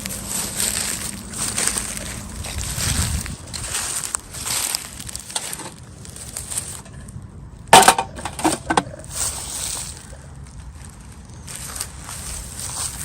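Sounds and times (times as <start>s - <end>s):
plastic packaging crinkling: 0.0s - 7.0s.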